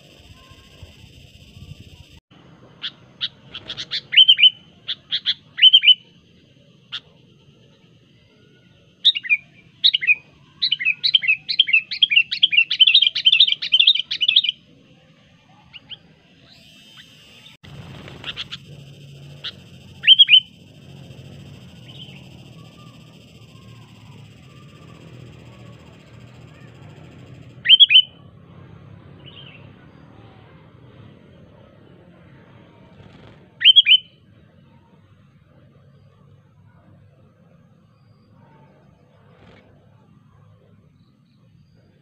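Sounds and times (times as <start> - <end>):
bird chirping and chattering: 2.8 - 6.1, 16.5 - 28.2.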